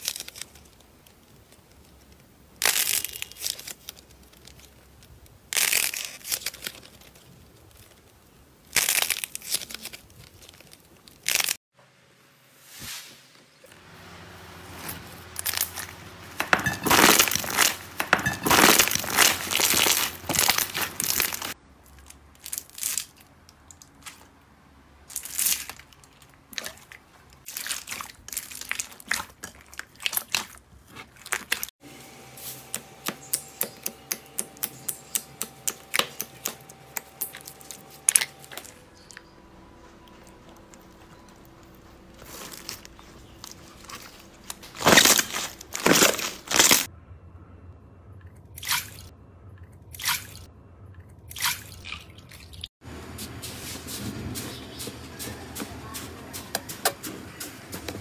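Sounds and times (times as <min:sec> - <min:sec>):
slime crackling and popping: 0:00.0 - 0:11.6.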